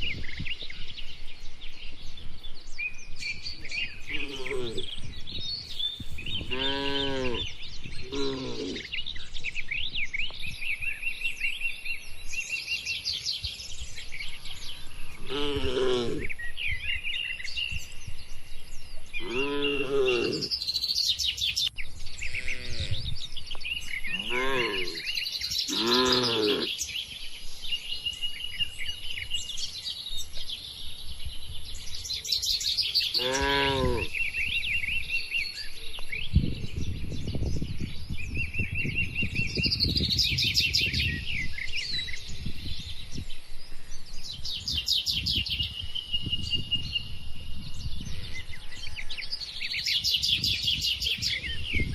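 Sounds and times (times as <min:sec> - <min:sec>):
small birds chirping: 0:00.0 - 0:51.9
cattle calls: 0:25.7 - 0:26.7, 0:33.2 - 0:34.1.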